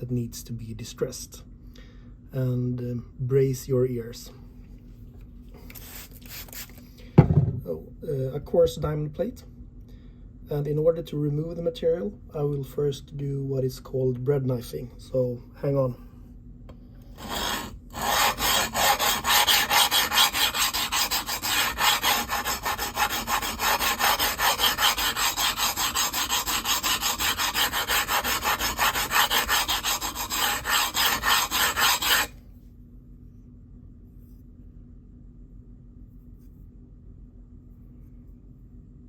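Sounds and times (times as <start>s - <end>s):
faint low hum: 0.0s - 39.0s
knife scraping on diamond plate: 17.2s - 32.3s.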